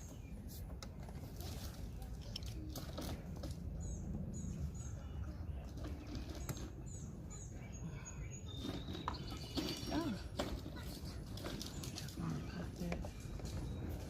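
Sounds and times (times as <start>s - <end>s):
bird chirps: 3.8s - 10.2s.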